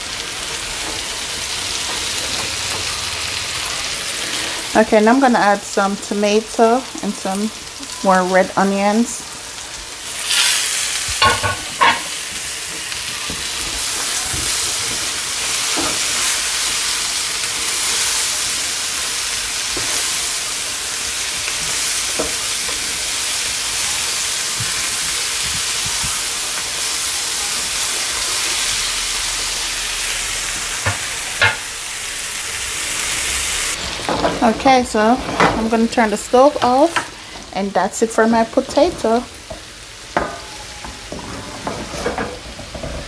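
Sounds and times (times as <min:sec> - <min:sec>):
vegetables sizzling in a frying pan: 0:00.0 - 0:43.0.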